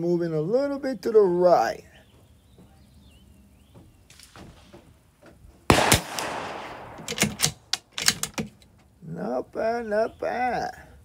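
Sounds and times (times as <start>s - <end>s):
rifle shot with ringing tail: 5.7s - 7.6s
short clicks: 5.9s - 8.6s.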